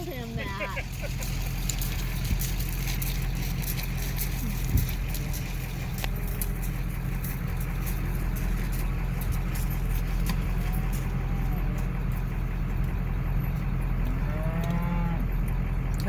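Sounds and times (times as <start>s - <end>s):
truck engine humming: 0.0s - 16.0s
cow mooing faintly: 14.2s - 15.3s.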